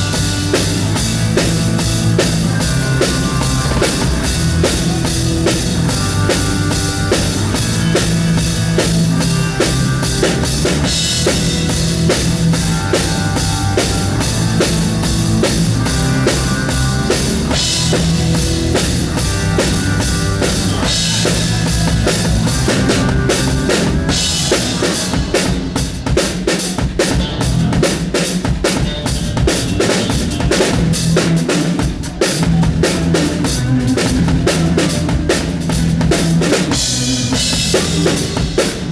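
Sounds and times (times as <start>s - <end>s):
band music sustained notes: 0.0s - 25.4s
drum kit groove: 0.0s - 38.9s.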